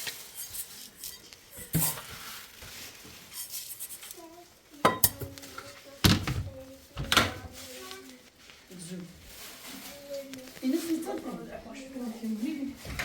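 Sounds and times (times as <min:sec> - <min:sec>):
kitchenware clattering: 0:00.0 - 0:02.3, 0:04.8 - 0:07.6.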